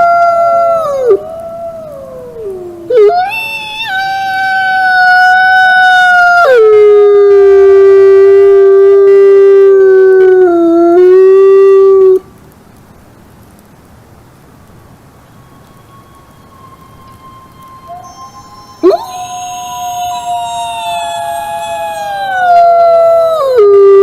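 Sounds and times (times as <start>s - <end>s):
wolf howling: 0.0s - 8.7s, 15.4s - 24.0s.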